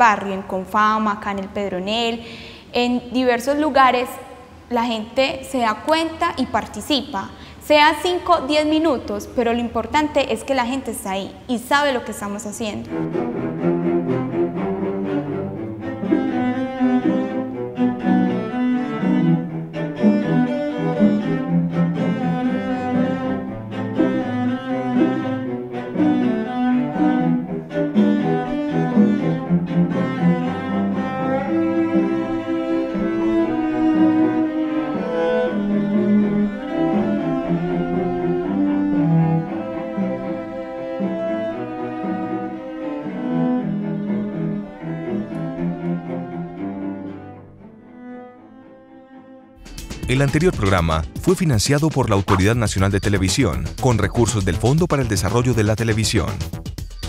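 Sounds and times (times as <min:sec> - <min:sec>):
bowed strings music: 0:11.7 - 0:57.0.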